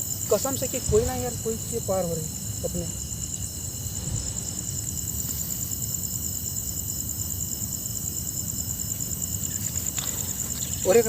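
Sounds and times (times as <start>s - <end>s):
crickets trilling: 0.0s - 11.0s
low rumble: 0.7s - 6.6s.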